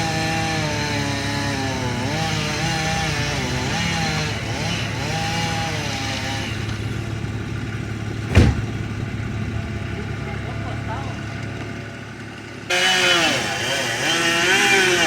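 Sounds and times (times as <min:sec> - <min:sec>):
chainsaw engine revving: 0:00.0 - 0:11.2, 0:12.7 - 0:15.0
heavy thud: 0:08.1 - 0:09.0.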